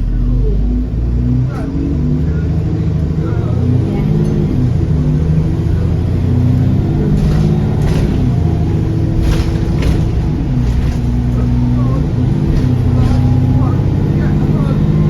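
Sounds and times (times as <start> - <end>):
bus engine droning: 0.0 - 15.0
sharp rattles or knocks: 7.1 - 13.6.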